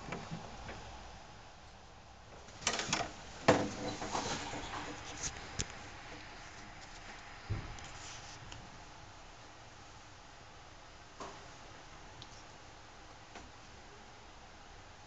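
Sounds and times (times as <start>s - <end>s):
dull thump: 7.4s - 7.8s.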